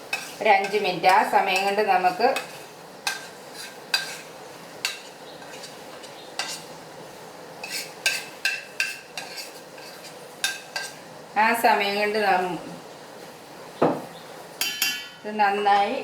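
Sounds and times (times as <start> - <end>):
stirring food in bowl: 0.0 - 6.8, 7.6 - 11.0.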